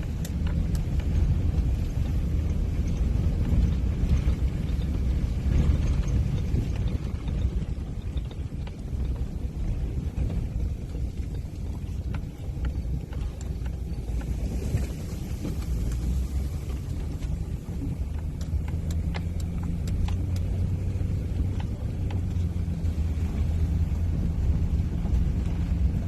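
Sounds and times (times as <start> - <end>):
light ticks and rattles: 0.0 - 26.0
vehicle engine rumbling: 0.0 - 26.0.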